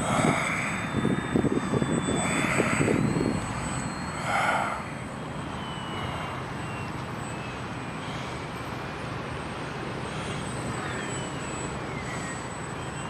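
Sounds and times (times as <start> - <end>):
wind buffeting microphone: 0.0 - 4.8
airplane engine droning: 0.0 - 13.0.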